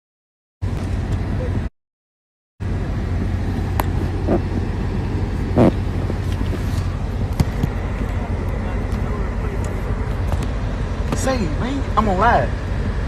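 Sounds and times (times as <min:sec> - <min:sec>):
low background rumble: 0:02.6 - 0:13.0.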